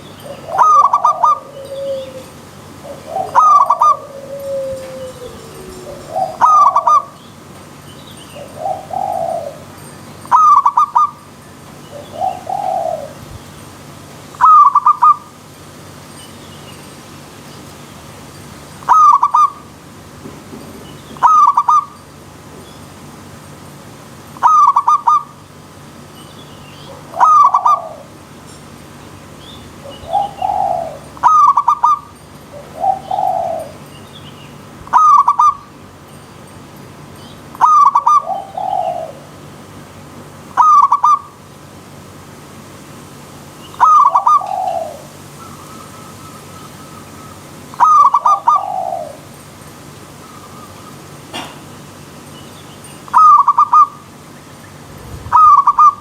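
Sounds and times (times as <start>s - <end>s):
doves cooing: 0.0s - 15.4s, 18.7s - 19.8s, 20.6s - 22.0s, 24.4s - 25.7s, 26.8s - 34.0s, 34.6s - 35.9s, 37.5s - 42.5s, 43.3s - 52.2s, 53.1s - 56.0s.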